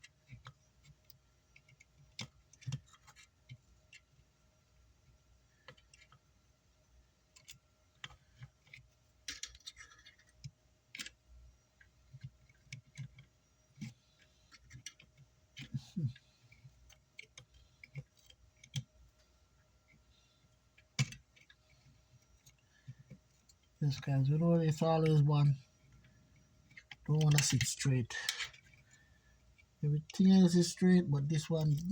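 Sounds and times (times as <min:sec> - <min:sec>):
small metal parts clicking: 0:00.0 - 0:04.2, 0:07.3 - 0:11.2, 0:12.1 - 0:19.2, 0:19.9 - 0:31.9.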